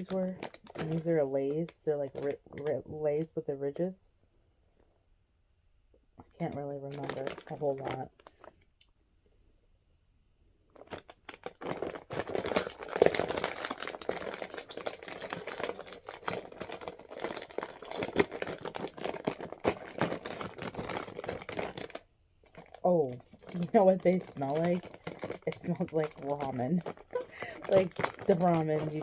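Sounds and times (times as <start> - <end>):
chip bag crinkling and tearing: 0.0 - 2.7, 6.4 - 8.5, 10.8 - 29.0.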